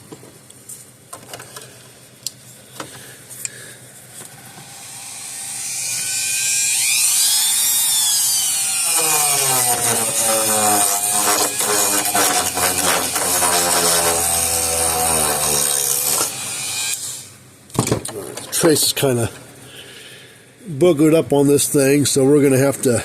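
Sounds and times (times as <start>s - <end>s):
electric tool motor whining: 4.5s - 17.1s.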